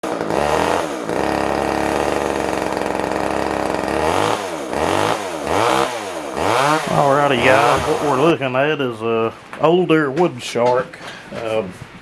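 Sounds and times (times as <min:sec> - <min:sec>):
chainsaw engine revving: 0:00.0 - 0:08.5.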